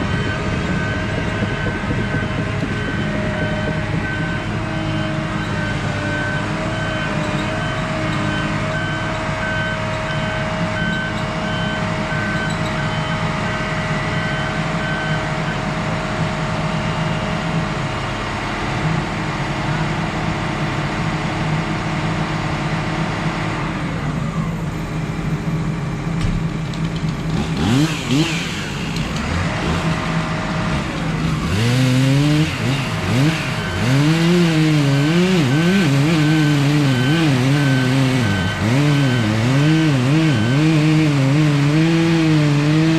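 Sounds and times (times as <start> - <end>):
chainsaw revving: 27.0 - 42.9.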